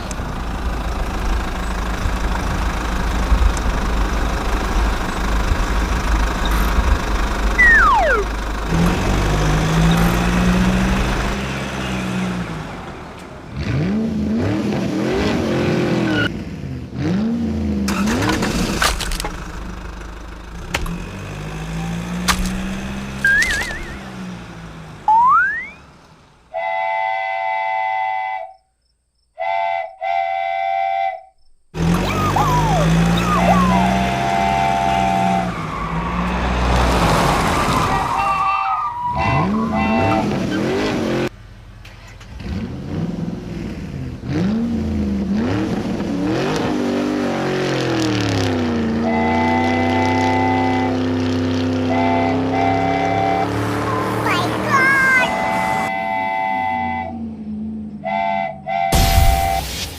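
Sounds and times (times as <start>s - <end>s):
train whistle blasts: 26.5s - 28.5s, 29.4s - 31.3s, 49.0s - 50.9s, 51.9s - 53.5s, 55.4s - 57.2s, 58.0s - 59.6s.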